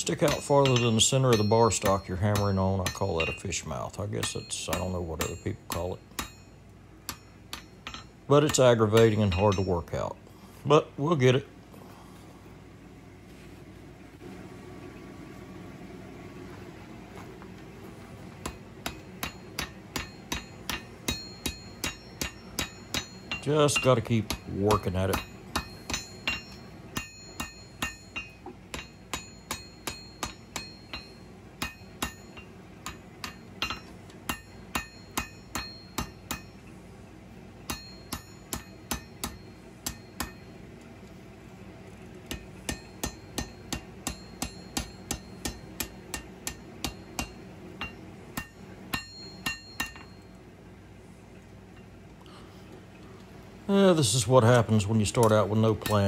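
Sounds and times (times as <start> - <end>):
hammer striking hot steel: 0.0 - 10.1, 18.4 - 36.6, 37.6 - 40.6, 42.3 - 50.3, 55.1 - 56.0.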